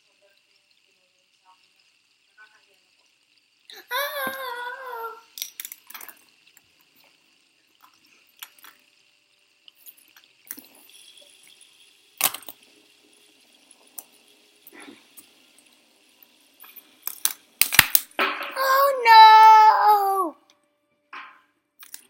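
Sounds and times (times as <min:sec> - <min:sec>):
small hard objects clicking: 0:05.3 - 0:06.6, 0:16.6 - 0:18.6, 0:21.2 - 0:22.0
high wavering vocal sound: 0:18.6 - 0:20.4.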